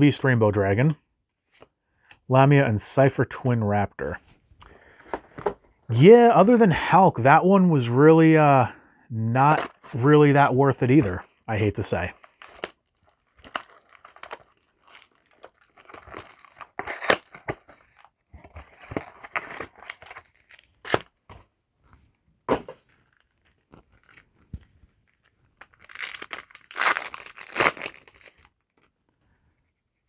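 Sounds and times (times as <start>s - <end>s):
cards shuffling: 4.9s - 5.6s, 9.4s - 10.1s, 10.8s - 21.4s, 25.6s - 28.5s
foil wrapper crinkling and tearing: 9.4s - 10.0s, 11.0s - 21.2s, 23.9s - 24.3s, 25.6s - 28.8s.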